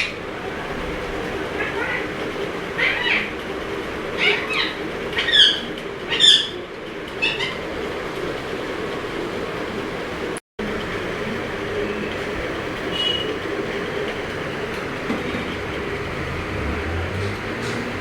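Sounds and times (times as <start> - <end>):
parrot high calls: 0.0 - 0.2, 1.6 - 2.1, 2.7 - 3.4, 4.2 - 6.6, 7.2 - 7.6
steady mechanical hum: 0.0 - 18.0.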